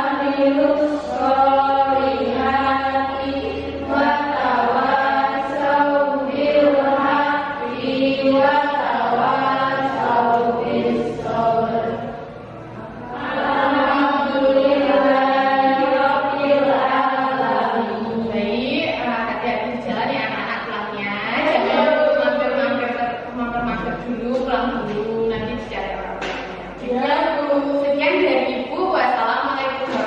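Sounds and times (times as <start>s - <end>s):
children chanting in unison: 0.0s - 23.3s.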